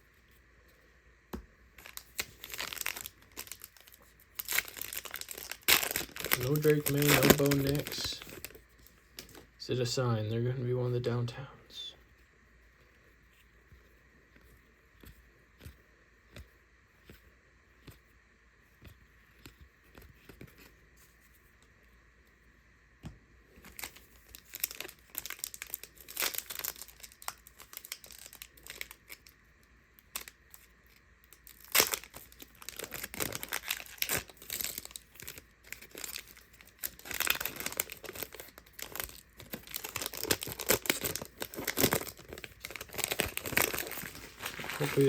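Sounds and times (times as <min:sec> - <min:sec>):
foil wrappers crinkling and tearing: 0:01.8 - 0:09.4, 0:23.6 - 0:29.4, 0:30.0 - 0:45.0.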